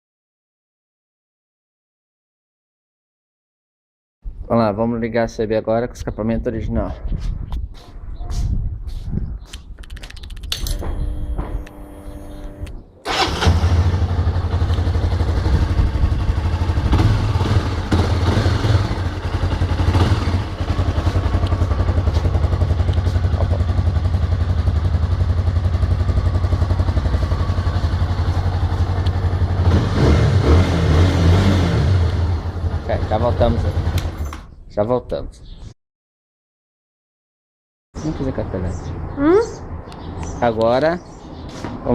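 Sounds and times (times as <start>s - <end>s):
motorcycle engine starting and idling: 10.6s - 34.5s.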